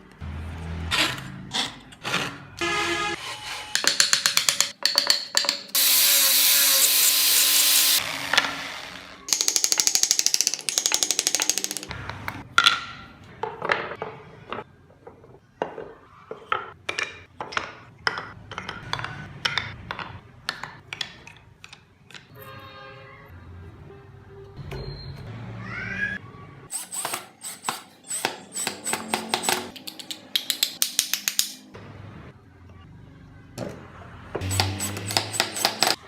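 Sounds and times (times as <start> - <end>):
woodworking tool rasping: 26.8 - 29.7, 34.4 - 36.0.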